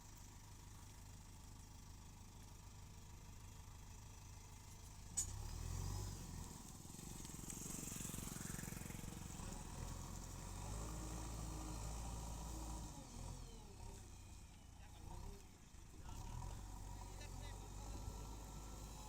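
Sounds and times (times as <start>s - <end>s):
diesel engine droning: 0.0s - 19.0s.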